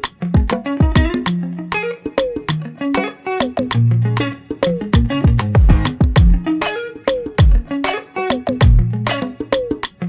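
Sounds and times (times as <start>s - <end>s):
plucked guitar notes: 0.0s - 10.0s
deep kick drum thumps: 0.4s - 1.2s, 5.0s - 6.5s, 7.4s - 7.7s, 8.6s - 8.9s.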